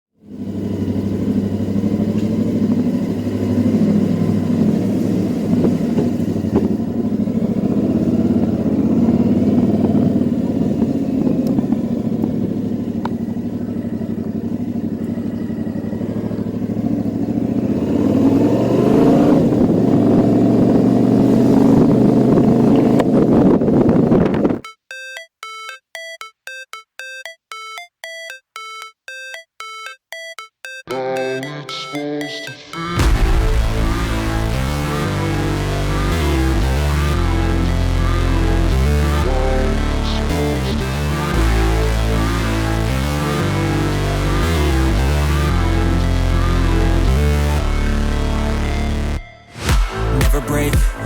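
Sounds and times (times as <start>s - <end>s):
motorcycle engine running and revving: 0.2s - 24.5s.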